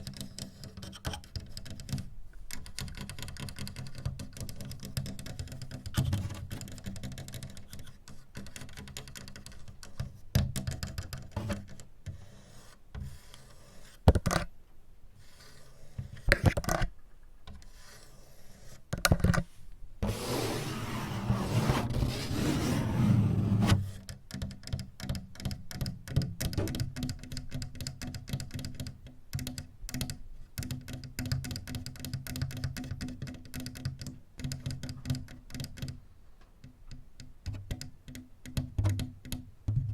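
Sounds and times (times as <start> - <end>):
scratching and rubbing: 20.0 - 23.9.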